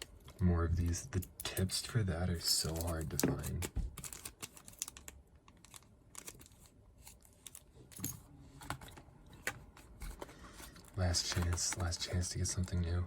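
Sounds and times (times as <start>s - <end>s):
plastic packaging crinkling: 2.6s - 7.7s.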